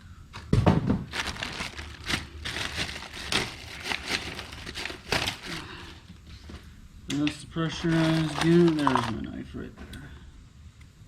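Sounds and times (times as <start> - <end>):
packaging crinkling and rustling: 0.9 - 6.6, 7.2 - 9.5.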